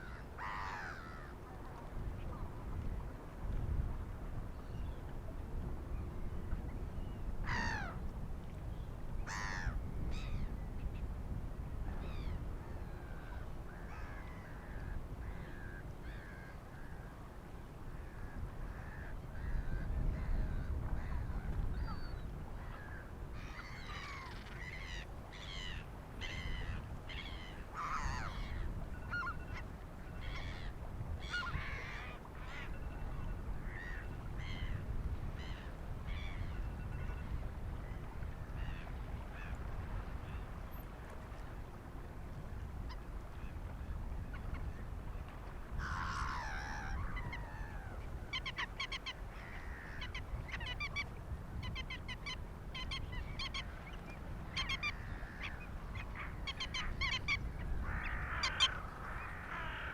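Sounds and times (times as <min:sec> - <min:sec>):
gulls and crows calling: 0:00.0 - 0:01.5, 0:07.4 - 0:08.0, 0:09.2 - 0:10.6, 0:11.9 - 0:17.2, 0:17.9 - 0:40.8, 0:45.7 - 0:59.9
low rush of the sea: 0:00.0 - 0:59.9.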